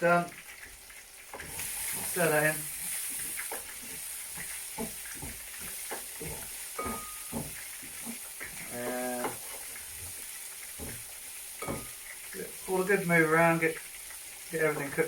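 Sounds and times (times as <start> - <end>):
vegetables sizzling in a frying pan: 0.0 - 15.0
utensil scraping and knocking on pan: 3.1 - 12.0.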